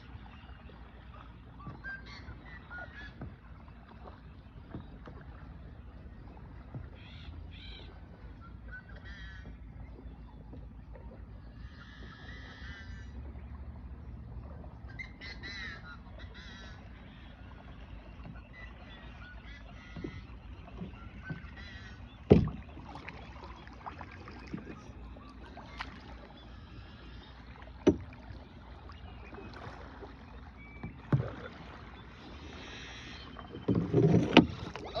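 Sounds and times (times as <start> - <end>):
bird calls: 0.0 - 35.0
wind and water rumble: 0.0 - 35.0
wooden knocks on boat hull: 19.7 - 23.2, 27.8 - 28.3, 30.8 - 31.5, 33.6 - 35.0.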